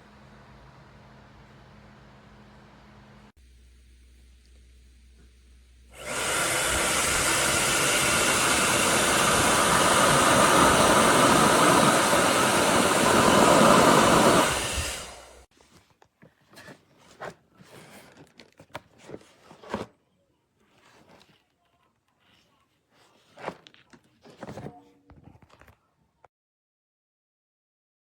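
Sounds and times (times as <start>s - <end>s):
blow dryer running: 4.5s - 15.5s
faint clicks and handling: 15.6s - 25.9s.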